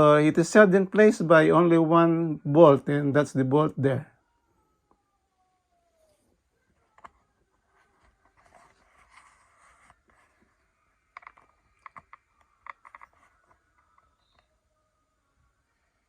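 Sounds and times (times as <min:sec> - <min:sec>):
soft rustle: 0:06.2 - 0:14.6.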